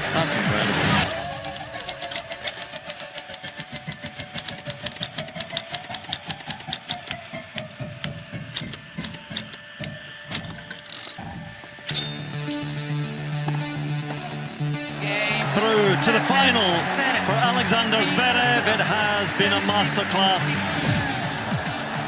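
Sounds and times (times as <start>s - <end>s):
typewriter keys clacking: 1.1s - 11.2s
typewriter bell ring: 11.9s - 12.6s.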